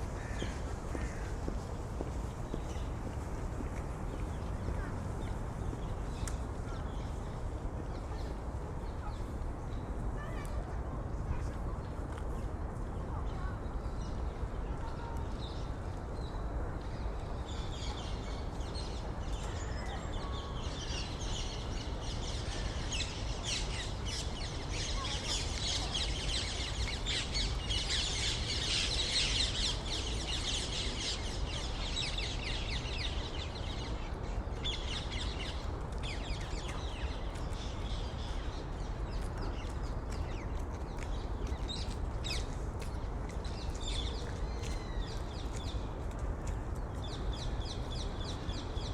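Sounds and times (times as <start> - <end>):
distant city rumble: 0.0 - 48.9
small birds chirping: 17.4 - 48.9.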